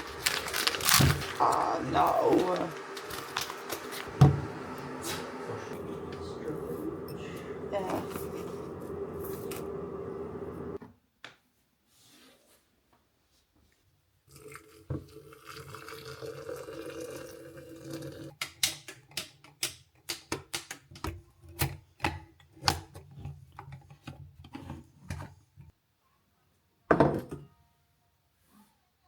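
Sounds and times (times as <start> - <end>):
running water: 0.0 - 10.8
crockery and utensils clinking: 2.4 - 10.8.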